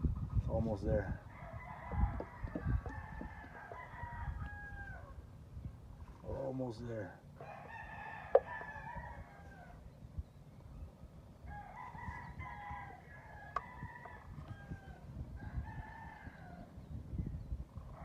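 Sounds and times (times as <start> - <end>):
rooster crowing: 1.2 - 5.2, 7.4 - 9.8, 11.4 - 16.7.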